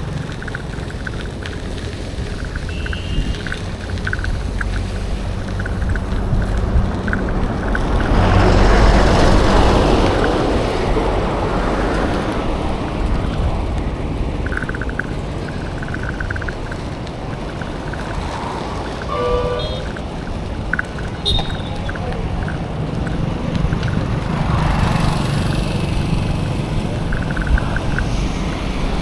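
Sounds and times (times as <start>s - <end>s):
road traffic rumble: 0.0s - 29.0s
wind on microphone: 0.0s - 29.0s
vehicle passing: 3.3s - 29.0s
horn honk: 19.0s - 20.0s, 21.2s - 21.8s.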